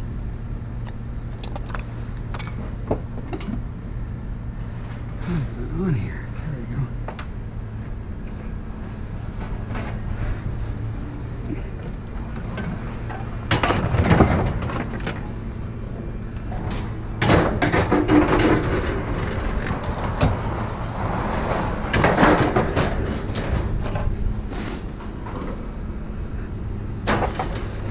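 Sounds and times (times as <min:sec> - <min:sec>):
low machine hum: 0:00.0 - 0:27.9
scrap metal clattering: 0:16.5 - 0:25.6.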